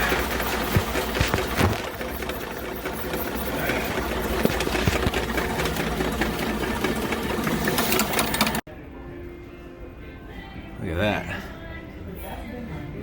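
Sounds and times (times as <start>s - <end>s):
drain-cleaning machine running: 0.0s - 8.6s.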